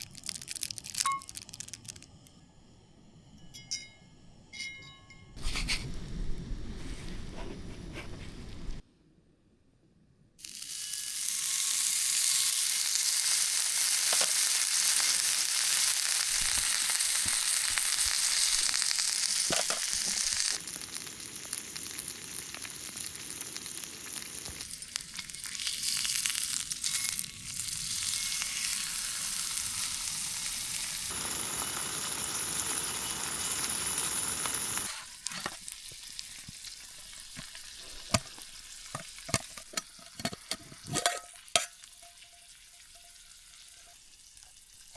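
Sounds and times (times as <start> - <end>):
steak sizzling in a hot pan: 10.4 - 40.2.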